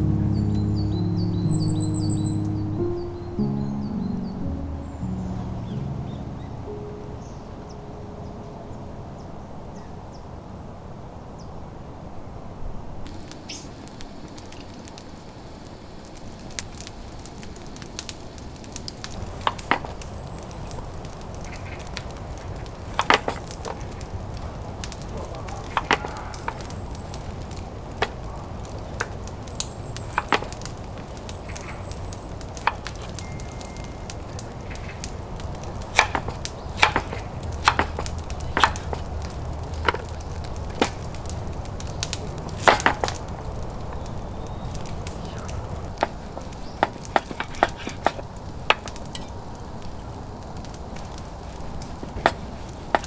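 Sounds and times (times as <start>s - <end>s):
low background rumble: 0.0s - 7.7s
wood cracking and snapping: 16.1s - 53.0s.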